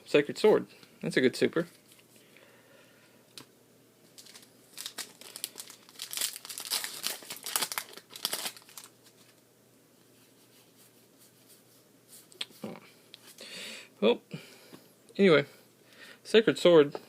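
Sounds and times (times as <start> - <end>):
foil wrapper crinkling: 4.1 - 9.4.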